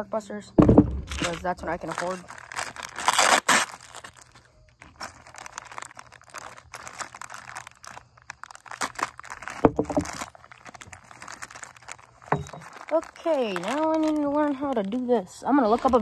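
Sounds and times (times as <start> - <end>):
knock: 0.6 - 1.1
packaging crinkling and rustling: 1.0 - 16.0.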